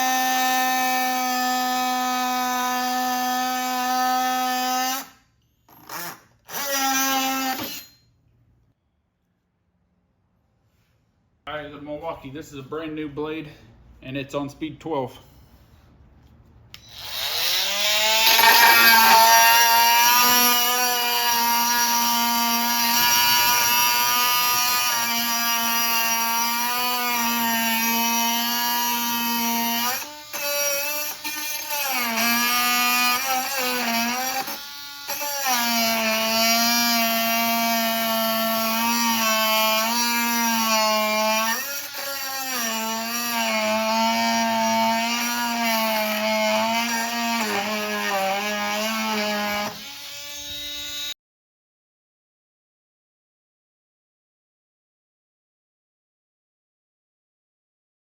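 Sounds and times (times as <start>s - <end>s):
oscillating multi-tool buzzing: 16.8s - 51.2s.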